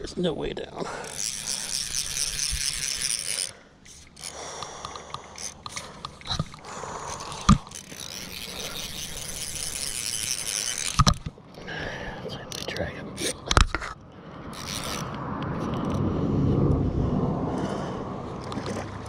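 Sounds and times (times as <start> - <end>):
fishing reel drag buzzing: 0.9 - 11.4, 12.5 - 13.4, 14.5 - 16.0.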